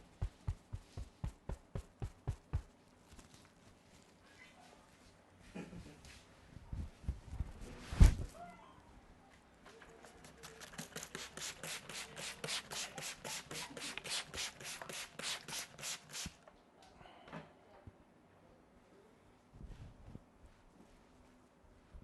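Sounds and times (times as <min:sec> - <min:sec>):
hands rubbing briskly: 0:00.0 - 0:02.7.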